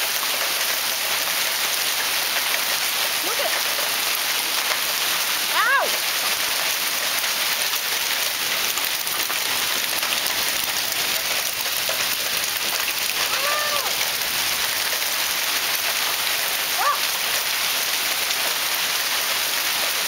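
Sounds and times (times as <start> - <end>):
hail and heavy rain: 0.0 - 20.0.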